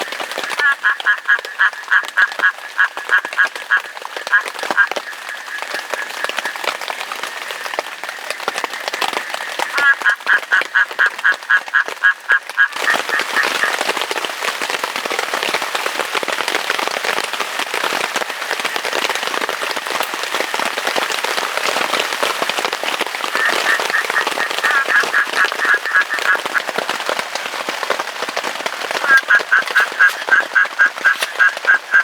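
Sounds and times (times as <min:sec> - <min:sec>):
rain falling: 0:00.0 - 0:32.0
animal calling: 0:23.4 - 0:26.7, 0:29.0 - 0:32.0.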